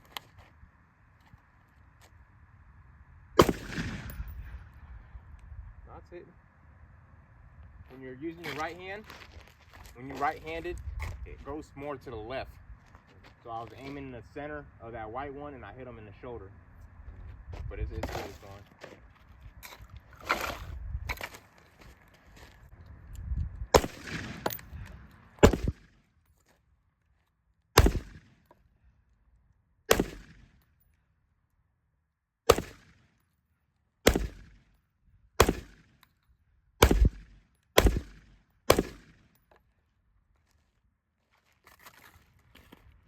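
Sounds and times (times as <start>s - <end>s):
pistol shots: 3.4s - 4.3s, 23.7s - 24.7s, 25.4s - 26.0s, 27.8s - 28.4s, 29.9s - 30.6s, 32.5s - 33.1s, 34.0s - 34.7s, 35.4s - 36.0s, 36.8s - 39.3s.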